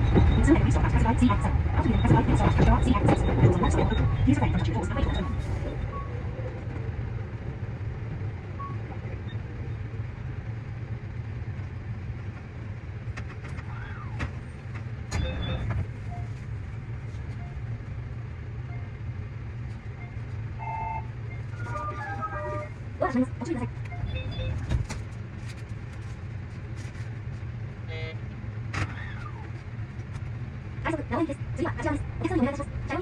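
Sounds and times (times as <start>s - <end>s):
electric train running: 0.0s - 16.6s.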